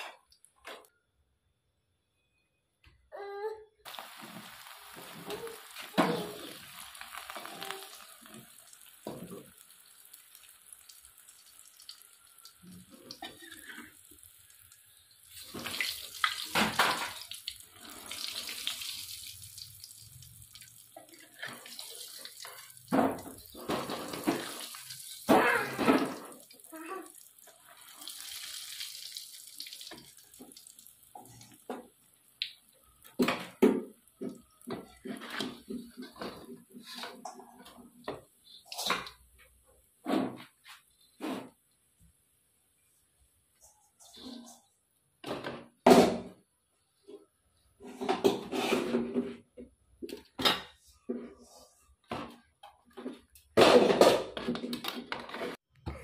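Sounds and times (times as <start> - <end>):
tap water splashing in sink: 7.2 - 10.2, 15.3 - 26.6, 27.4 - 39.2.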